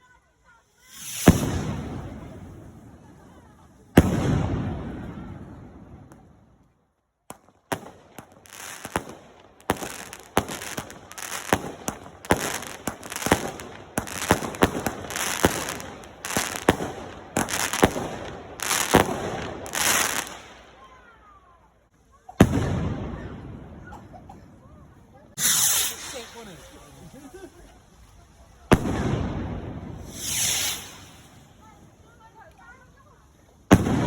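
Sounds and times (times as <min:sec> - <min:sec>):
fireworks bangs and crackles: 0:00.0 - 0:34.0
loud firework bang: 0:01.0 - 0:02.7, 0:33.7 - 0:34.0.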